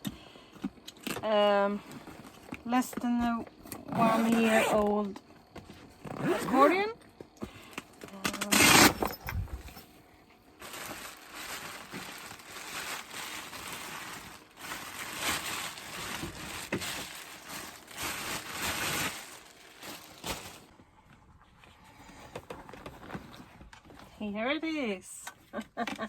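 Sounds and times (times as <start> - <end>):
packaging rustling and crinkling: 10.6 - 20.7, 22.1 - 24.1.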